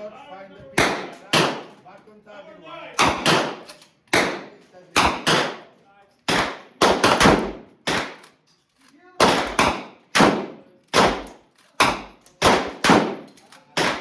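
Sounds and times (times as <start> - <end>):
gunshots with echo: 0.8 - 1.8, 3.0 - 5.7, 6.3 - 8.2, 9.2 - 14.0.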